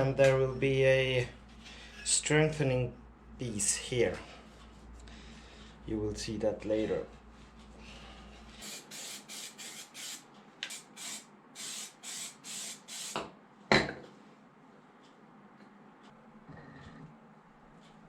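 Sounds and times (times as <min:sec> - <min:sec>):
aerosol can spraying: 0:08.6 - 0:13.2.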